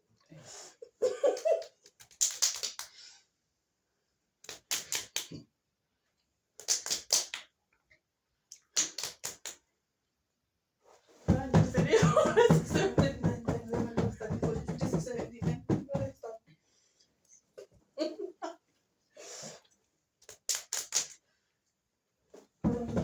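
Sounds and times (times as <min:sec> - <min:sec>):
music with a beat: 0:11.3 - 0:16.1, 0:22.7 - 0:23.0.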